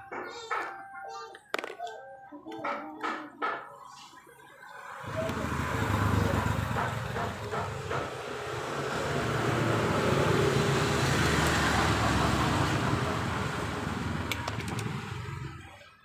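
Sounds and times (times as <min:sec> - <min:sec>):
passing vehicle engine and road noise: 0:04.4 - 0:16.0.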